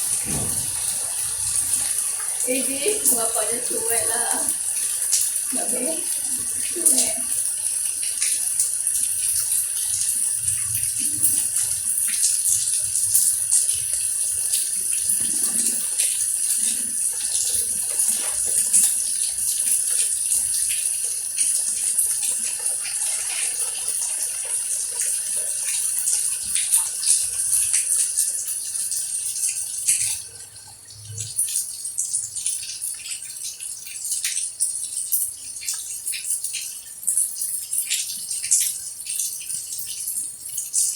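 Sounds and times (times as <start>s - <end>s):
hiss of running water: 0.0s - 30.0s
water splashes and patters: 0.0s - 40.9s.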